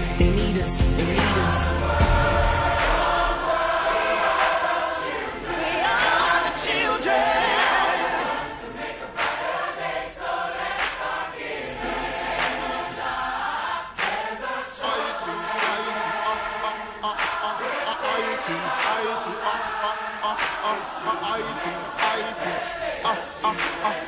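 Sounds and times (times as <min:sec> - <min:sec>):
pop backing track with beat: 0:00.0 - 0:03.3, 0:14.0 - 0:24.0
choir singing: 0:00.5 - 0:24.0.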